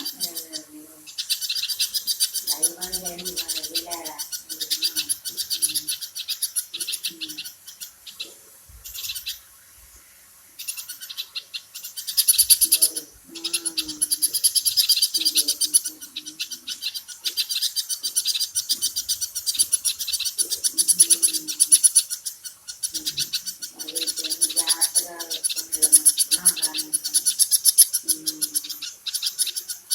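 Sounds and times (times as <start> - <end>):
small birds chirping: 0.0 - 29.9.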